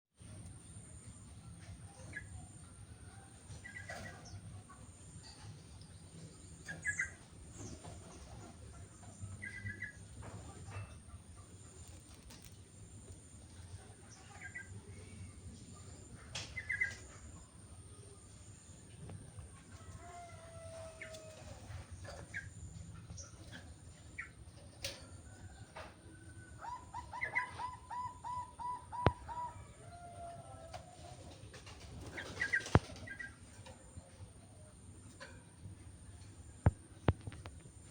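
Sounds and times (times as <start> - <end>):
bird calling: 26.6 - 29.8.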